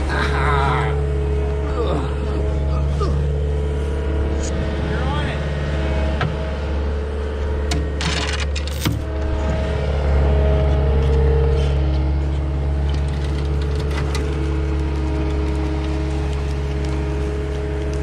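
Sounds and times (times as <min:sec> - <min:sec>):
diesel engine under load: 0:00.0 - 0:18.0.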